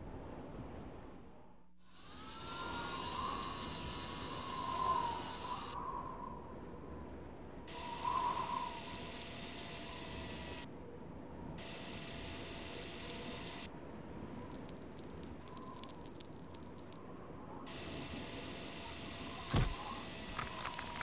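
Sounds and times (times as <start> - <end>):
whirring motor: 1.8 - 5.8, 7.7 - 10.7, 11.6 - 13.7, 17.7 - 21.0
rapid ratcheting clicks: 7.7 - 10.7, 11.6 - 13.7, 17.7 - 21.0.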